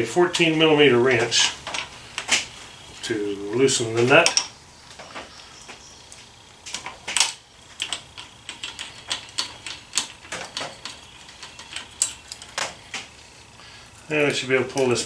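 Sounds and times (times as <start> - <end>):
wrench metallic clicks: 6.7 - 12.8.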